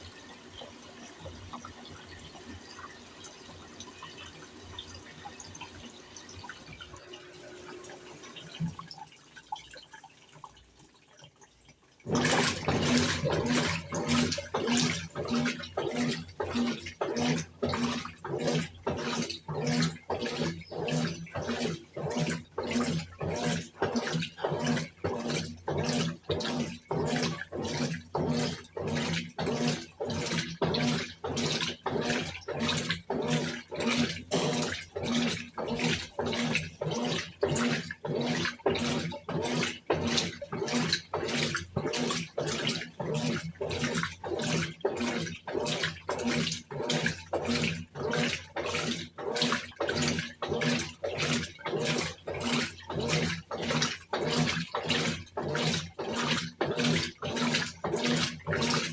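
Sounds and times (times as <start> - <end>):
motor hum: 0.0 - 8.8
washing machine sloshing water: 0.0 - 58.9.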